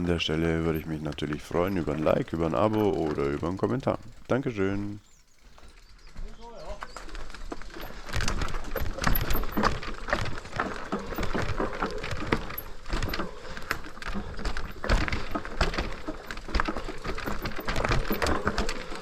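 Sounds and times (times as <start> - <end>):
bike rattling over stones: 0.0 - 19.0.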